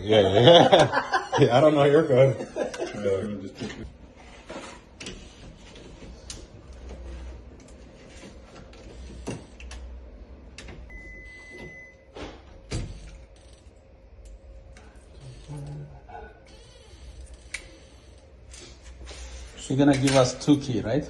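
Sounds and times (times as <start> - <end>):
electronic beep: 10.9 - 12.0.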